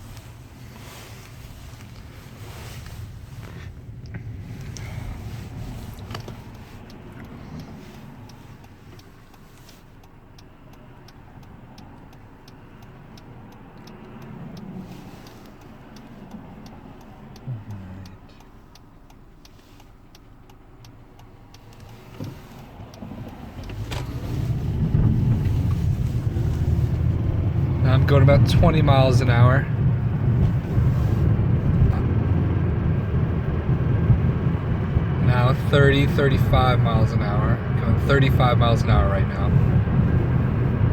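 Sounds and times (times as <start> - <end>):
car engine running: 0.0 - 40.9
light regular ticking: 0.0 - 40.9
road noise: 0.0 - 40.9.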